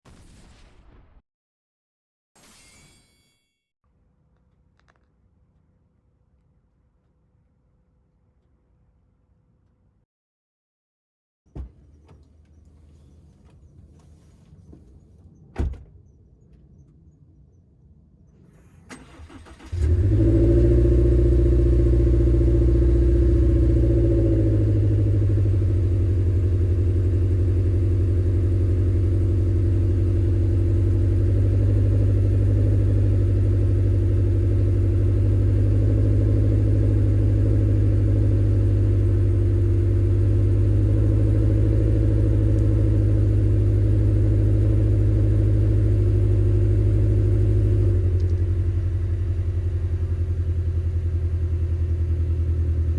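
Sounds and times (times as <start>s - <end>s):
car engine idling with burble: 11.5s - 15.3s, 18.5s - 52.9s
car engine starting: 18.5s - 52.9s.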